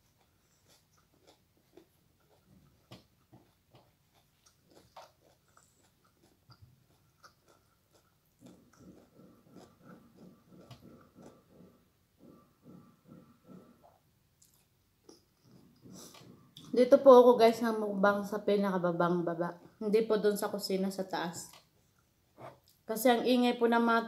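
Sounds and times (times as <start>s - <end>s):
person eating mouth sounds: 0.0s - 16.8s
steady chewing: 0.0s - 18.4s, 19.3s - 22.9s.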